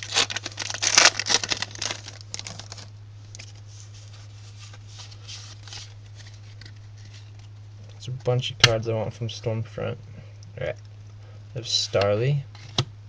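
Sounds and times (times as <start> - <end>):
foil wrapper crinkling and tearing: 0.0 - 3.6
steady low hum: 0.0 - 13.0.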